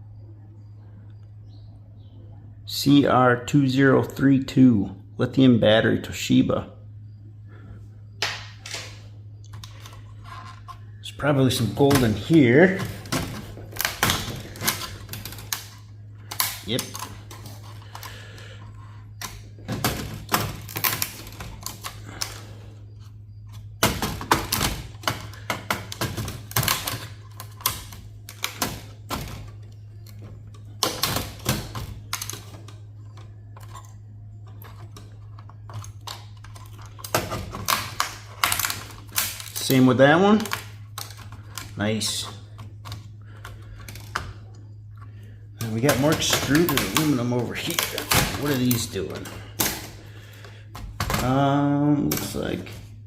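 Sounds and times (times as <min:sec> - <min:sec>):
steady low hum: 0:00.0 - 0:53.0
server parts clicking and clattering: 0:08.2 - 0:53.0.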